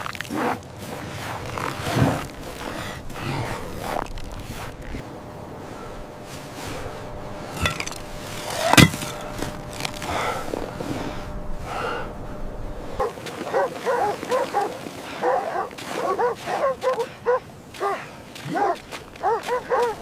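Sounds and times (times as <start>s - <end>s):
dog barking and yipping: 13.0s - 20.0s.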